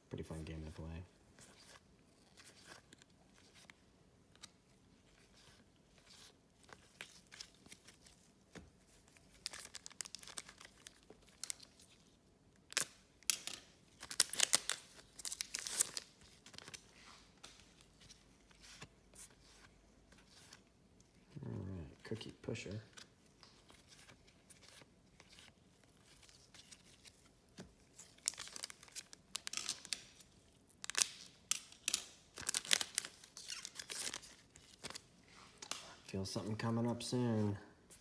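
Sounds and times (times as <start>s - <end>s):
foil wrapper crinkling and tearing: 9.0s - 12.1s, 12.7s - 16.8s, 27.9s - 35.8s.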